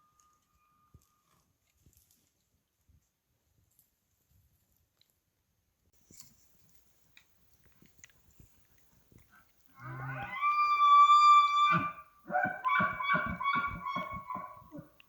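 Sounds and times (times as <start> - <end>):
elk bugling: 9.4 - 15.0.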